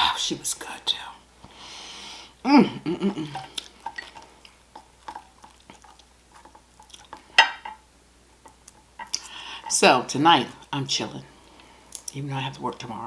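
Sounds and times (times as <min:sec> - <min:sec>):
person humming: 0:02.4 - 0:03.5
chewing: 0:03.1 - 0:07.4.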